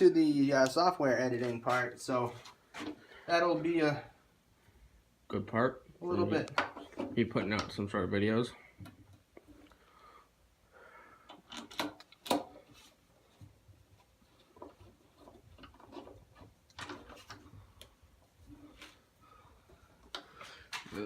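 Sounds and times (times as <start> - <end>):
clicks and knocks of handled machine parts: 11.2 - 12.8.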